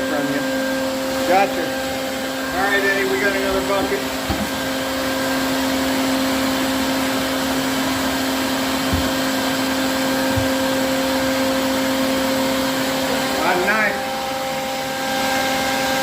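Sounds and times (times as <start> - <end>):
vacuum motor humming: 0.0 - 16.0
soft low thumps: 8.9 - 9.4, 10.2 - 10.8.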